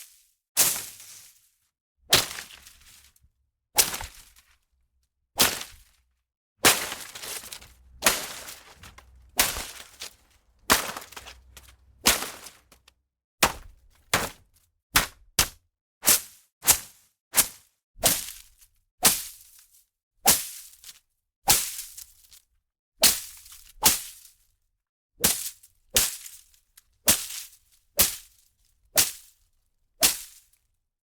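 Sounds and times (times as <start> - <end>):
plants being struck and slashed: 2.1 - 2.7, 3.8 - 4.4, 5.4 - 5.9, 6.6 - 12.8, 13.4 - 14.4, 15.0 - 15.6
leaves rustling: 6.6 - 12.8.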